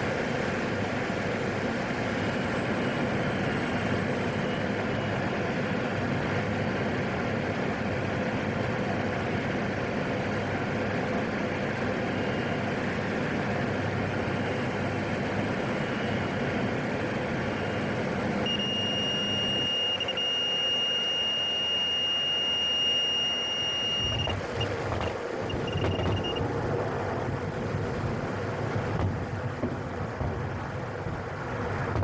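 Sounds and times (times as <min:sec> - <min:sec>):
aircraft engine and cabin noise: 0:00.0 - 0:32.0
wheels rumbling on runway: 0:00.0 - 0:32.0
high warning beep: 0:17.5 - 0:26.5.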